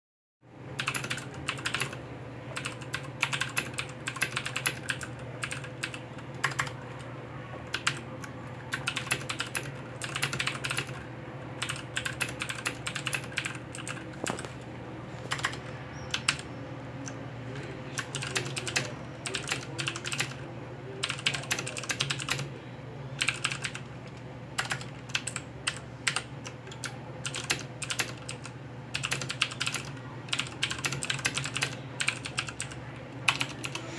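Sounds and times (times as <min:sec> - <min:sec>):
steady low hum: 0:00.4 - 0:33.9
mechanical keyboard clicks: 0:00.8 - 0:02.0, 0:02.6 - 0:06.8, 0:08.7 - 0:11.0, 0:11.6 - 0:14.5, 0:18.0 - 0:20.4, 0:21.0 - 0:22.4, 0:23.2 - 0:33.8.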